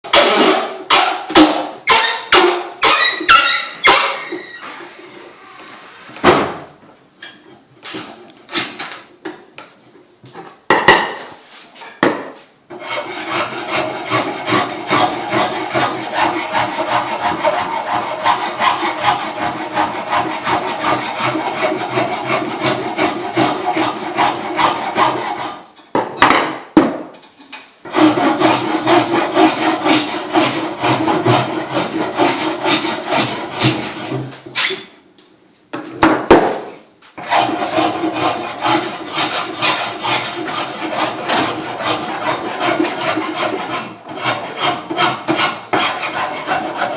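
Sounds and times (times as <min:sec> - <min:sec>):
rasp shaping wood: 0:00.1 - 0:04.4, 0:12.7 - 0:25.6, 0:27.9 - 0:34.4, 0:37.2 - 0:46.9.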